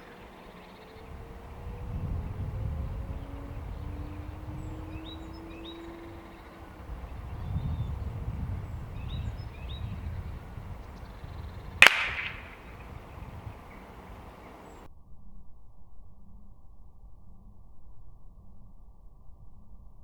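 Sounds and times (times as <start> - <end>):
faint bird chirps: 0.0 - 14.9
air rifle shot crack: 11.4 - 14.8.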